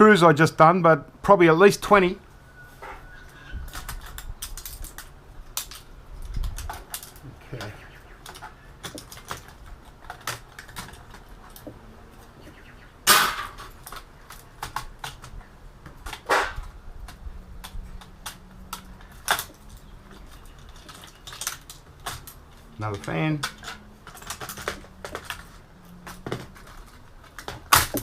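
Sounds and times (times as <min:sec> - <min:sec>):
computer parts clicking and clattering: 0:03.7 - 0:11.8, 0:13.2 - 0:28.0.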